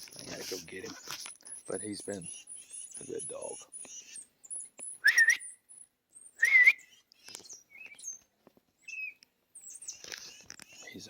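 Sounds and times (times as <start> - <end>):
man whistling: 5.0 - 5.5, 6.4 - 6.9.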